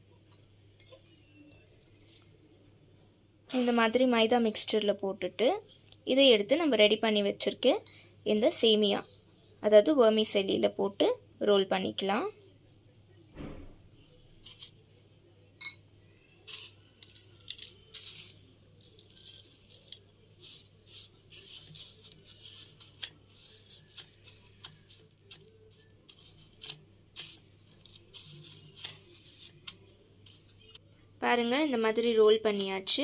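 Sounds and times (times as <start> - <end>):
dry vermicelli crackling: 16.5 - 30.8.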